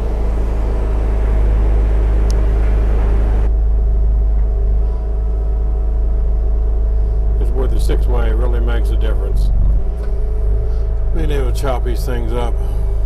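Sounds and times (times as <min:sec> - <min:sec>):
diesel engine running: 0:00.0 - 0:13.0
rushing noise: 0:00.0 - 0:13.0.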